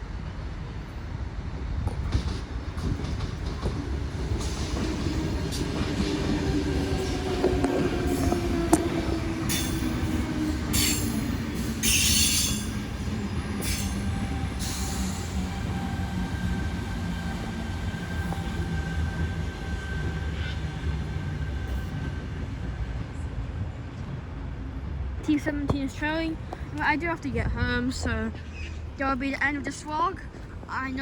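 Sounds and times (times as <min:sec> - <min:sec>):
electric train rumbling: 0:00.0 - 0:31.0
train motor whine: 0:02.8 - 0:22.2.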